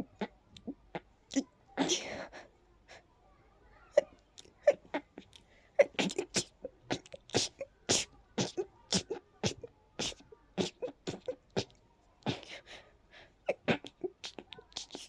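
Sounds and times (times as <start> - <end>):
person sneezing rapidly: 1.3 - 2.3, 5.8 - 15.0.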